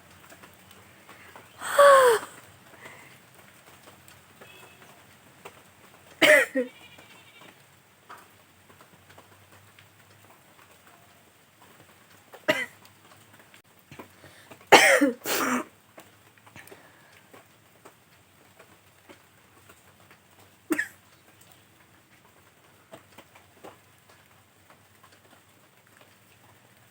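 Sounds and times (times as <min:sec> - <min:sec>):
woman sneezing: 0:01.6 - 0:02.4, 0:14.8 - 0:15.6.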